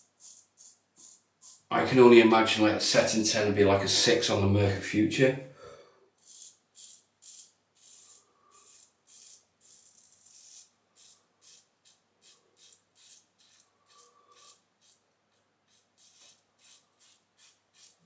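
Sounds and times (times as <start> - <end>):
razor scraping stubble: 6.2 - 15.0, 15.7 - 18.0.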